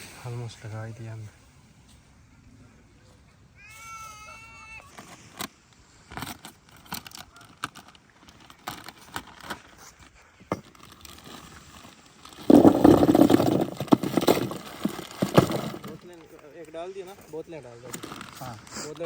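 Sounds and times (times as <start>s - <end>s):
loud rustling: 10.9s - 16.3s
objects clicking and knocking: 12.3s - 16.2s.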